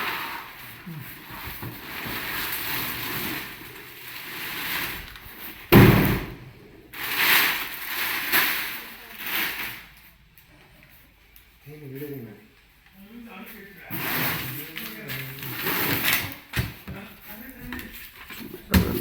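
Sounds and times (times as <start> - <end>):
packaging rustling and scraping: 0.0 - 5.9, 6.9 - 10.1, 13.9 - 19.0
loud knock: 5.7 - 6.5.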